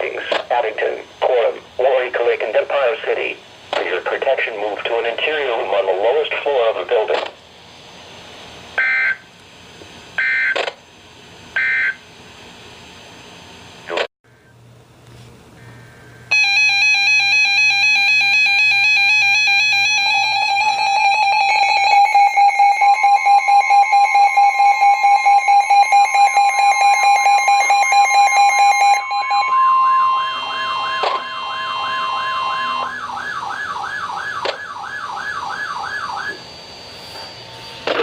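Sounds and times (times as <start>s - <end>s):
warbling alarm tone: 8.8s - 9.3s, 10.2s - 10.6s, 11.6s - 12.0s, 16.3s - 38.0s
steady electronic tone: 16.3s - 38.0s
up-and-down siren sweep: 16.3s - 38.0s
fast beeping tone: 20.4s - 33.1s.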